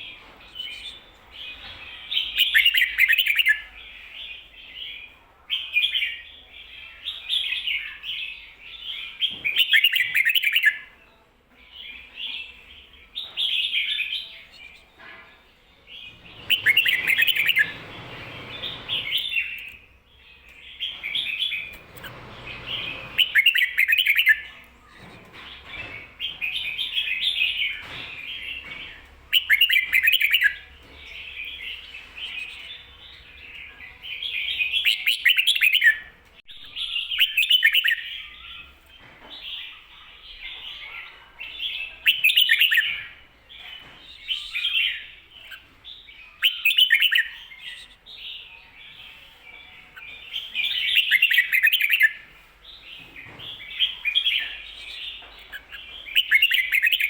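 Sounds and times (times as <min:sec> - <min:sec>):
soft bird twittering: 0:15.9 - 0:38.8, 0:39.5 - 0:57.0
bulbul warbled song: 0:16.1 - 0:19.8, 0:20.4 - 0:24.7, 0:25.4 - 0:38.8, 0:46.4 - 0:49.2, 0:53.6 - 0:57.0.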